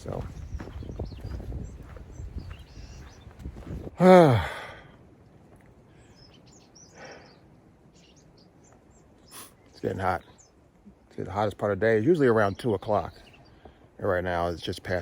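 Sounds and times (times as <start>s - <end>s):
man sighing: 4.0s - 5.0s.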